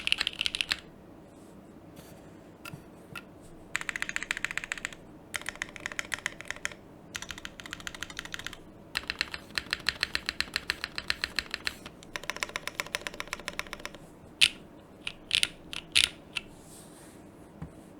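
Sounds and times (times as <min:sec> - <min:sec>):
mechanical keyboard typing: 0:00.0 - 0:00.9, 0:03.8 - 0:16.5.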